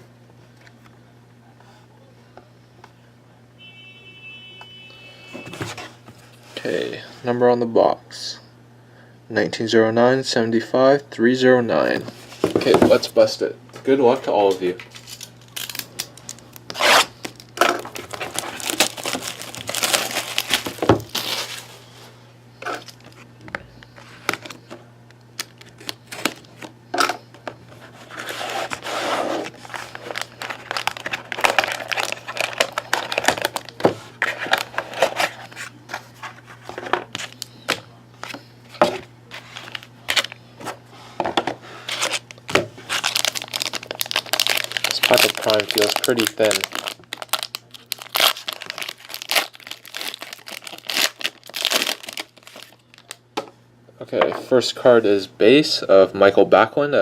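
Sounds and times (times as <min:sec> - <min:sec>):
steady low hum: 0:00.0 - 0:57.0
plastic wrapping crinkling and tearing: 0:14.9 - 0:21.7, 0:25.4 - 0:26.7, 0:28.0 - 0:35.7, 0:37.1 - 0:37.5, 0:39.3 - 0:40.4, 0:41.9 - 0:53.2.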